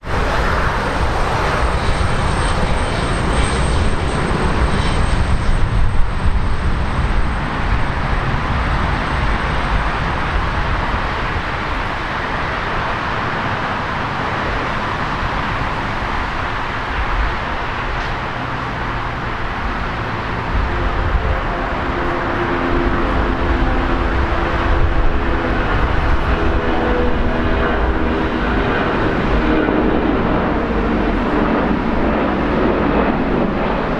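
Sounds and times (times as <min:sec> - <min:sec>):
jet engine roar: 0:00.0 - 0:33.9
low droning tones: 0:17.1 - 0:33.4.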